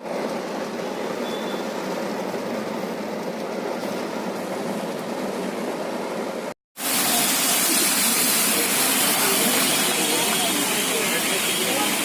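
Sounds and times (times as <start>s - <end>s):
heavy rain pouring: 6.8s - 12.0s.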